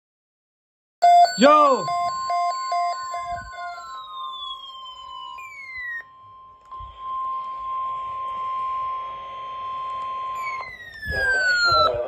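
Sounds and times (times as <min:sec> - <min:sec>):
steady warning alarm tone: 0:01.0 - 0:12.0
high whistling tones sliding down: 0:02.7 - 0:12.0.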